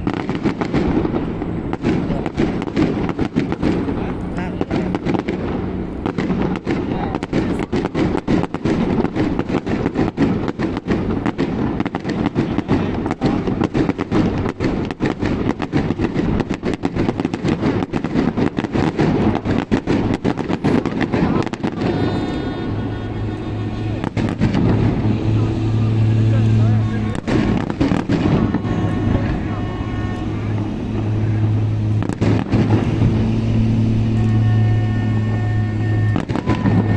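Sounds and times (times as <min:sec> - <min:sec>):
fireworks bangs and crackles: 0:00.0 - 0:36.9
steady pitched tone: 0:21.3 - 0:36.9
steady low hum: 0:21.5 - 0:36.9.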